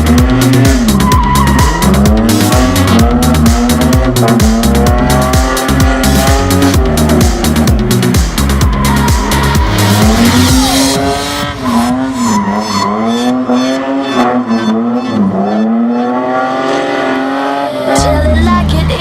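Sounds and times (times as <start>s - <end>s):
car engine revving: 0.0s - 19.0s
tyre squeal: 0.6s - 2.7s, 8.4s - 15.8s.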